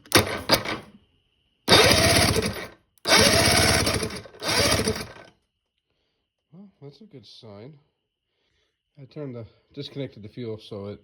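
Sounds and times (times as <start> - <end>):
electric starter cranking outboard motor: 0.0 - 0.8, 1.7 - 5.3.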